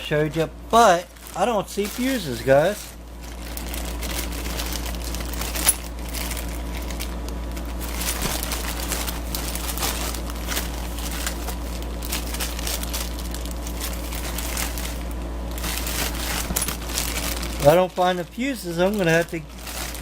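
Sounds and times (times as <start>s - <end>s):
steady low hum: 0.0s - 20.0s
plastic packaging rustling: 0.7s - 20.0s.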